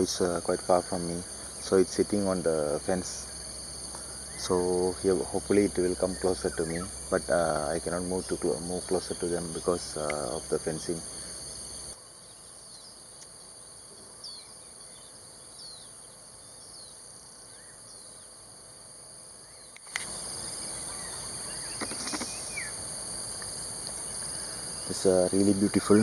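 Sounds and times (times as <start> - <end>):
high-pitched insect drone: 0.0 - 12.0, 19.4 - 26.0
small birds chirping: 0.0 - 12.0, 19.5 - 26.0.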